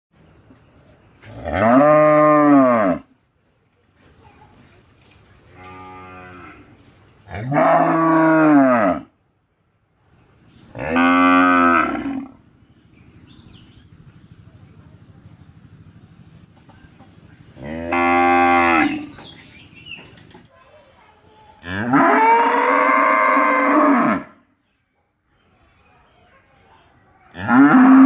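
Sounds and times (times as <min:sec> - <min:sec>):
cattle mooing: 0:07.3 - 0:09.1, 0:10.8 - 0:12.4, 0:17.6 - 0:19.1, 0:21.6 - 0:24.4, 0:27.4 - 0:28.0.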